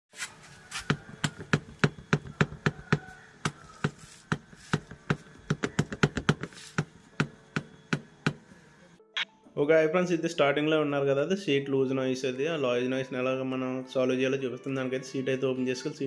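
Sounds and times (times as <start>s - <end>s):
motorcycle seat knocking: 0.9s - 8.4s.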